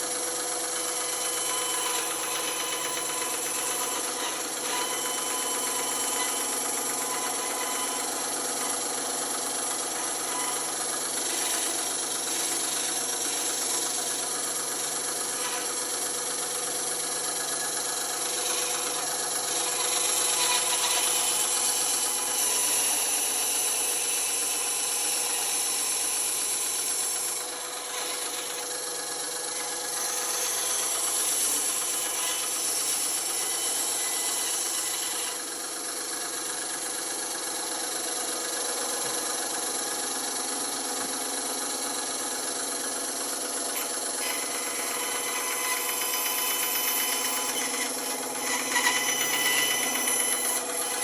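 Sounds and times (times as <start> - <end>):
band saw cutting wood: 0.0 - 51.0.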